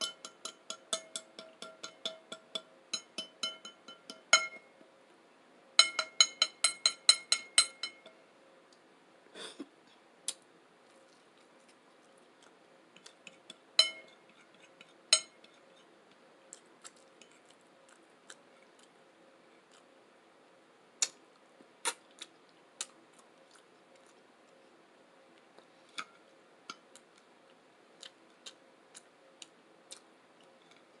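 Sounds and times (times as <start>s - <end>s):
cutlery clinking against dish: 0.0s - 4.7s, 5.8s - 8.2s, 13.0s - 15.6s.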